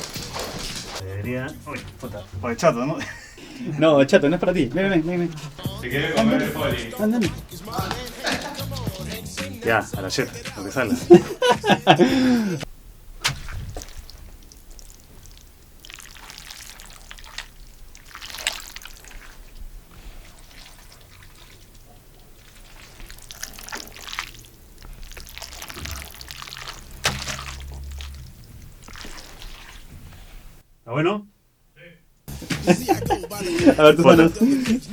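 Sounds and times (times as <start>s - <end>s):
wet squelching of spaghetti by hand: 4.8s - 30.6s.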